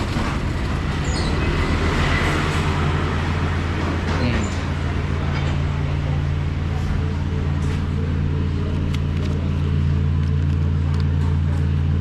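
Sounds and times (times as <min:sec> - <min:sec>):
road noise: 0:00.0 - 0:12.0
vehicle engine drone: 0:00.0 - 0:12.0.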